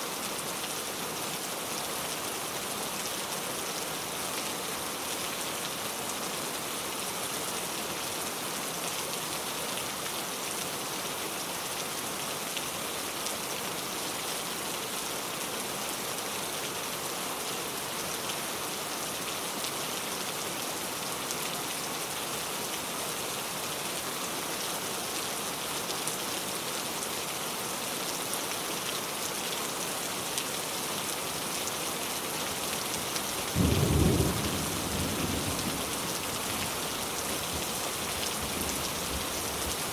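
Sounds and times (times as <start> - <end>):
rain pattering: 31.4 - 39.9.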